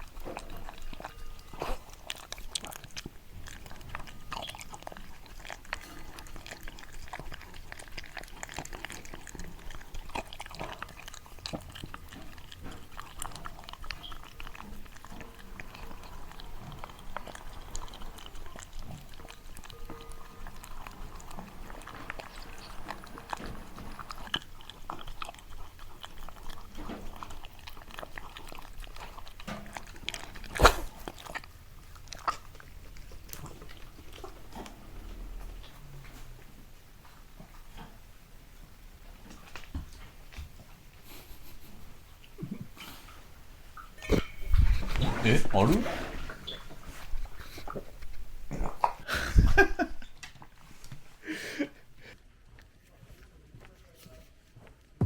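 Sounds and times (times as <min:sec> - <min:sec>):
dog chewing and crunching: 0:00.0 - 0:55.0.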